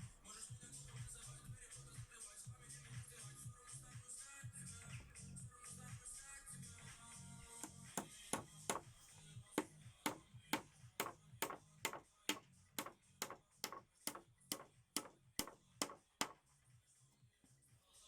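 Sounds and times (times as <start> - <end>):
background music: 0.0 - 18.0
hammer striking with a ring: 11.0 - 16.4.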